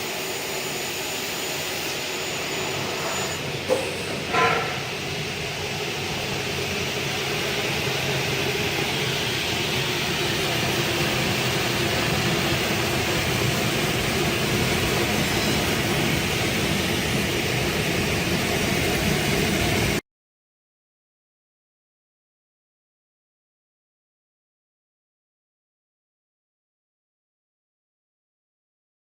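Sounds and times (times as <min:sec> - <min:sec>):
cutting saw whirring: 0:00.0 - 0:19.9.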